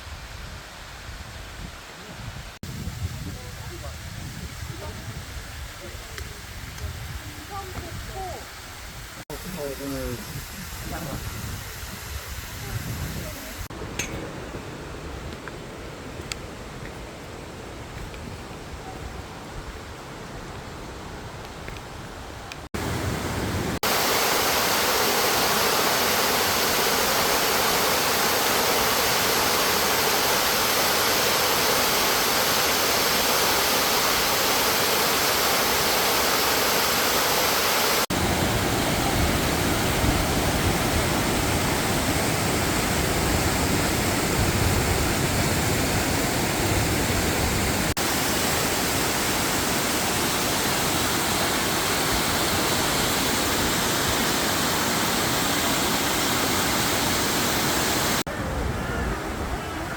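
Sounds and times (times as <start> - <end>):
stream cascading over rocks: 22.7 - 58.6.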